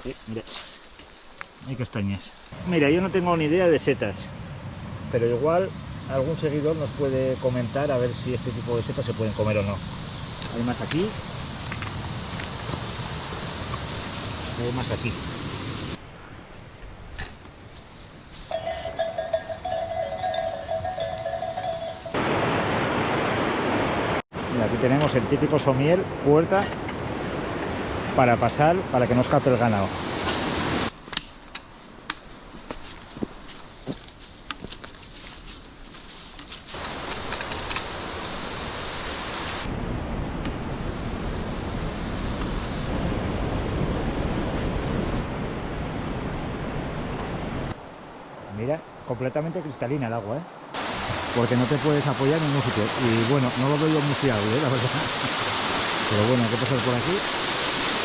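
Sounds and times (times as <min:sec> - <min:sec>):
livestock bell clanking: 0:18.5 - 0:22.2
rushing river water: 0:18.5 - 0:30.9, 0:36.7 - 0:40.3, 0:50.5 - 0:58.0.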